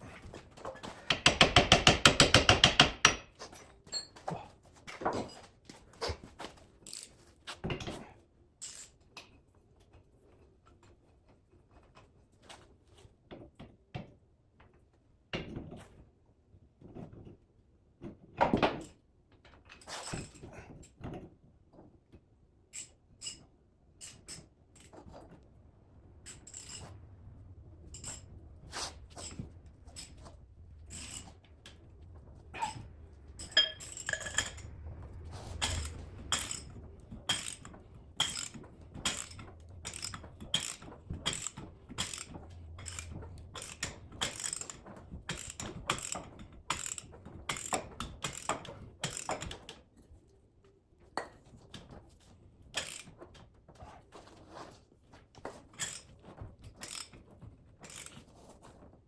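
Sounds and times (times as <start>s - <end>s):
sharp metallic clicks: 35.6s - 49.4s.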